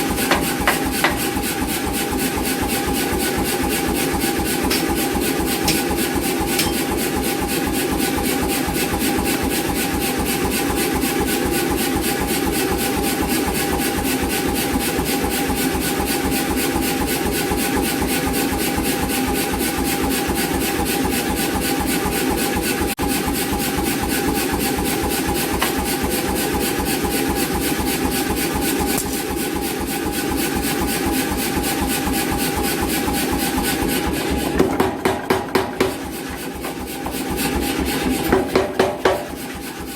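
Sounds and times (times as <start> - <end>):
power hammer striking: 0.0 - 1.5, 4.4 - 7.5, 25.5 - 26.0, 34.5 - 39.7.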